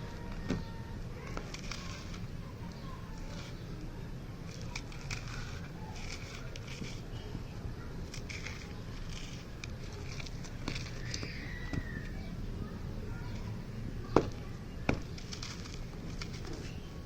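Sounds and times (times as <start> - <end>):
sand crumbling between fingers: 1.3 - 7.2, 8.0 - 12.2, 15.0 - 17.0.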